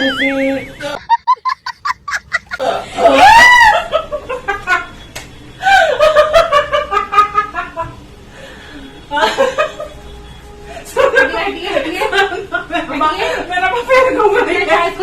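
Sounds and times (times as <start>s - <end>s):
person laughing: 0.0s - 3.6s.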